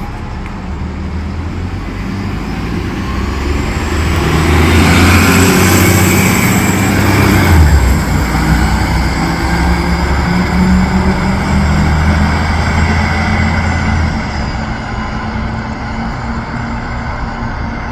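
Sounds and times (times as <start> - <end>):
bus diesel engine running: 0.0 - 17.9.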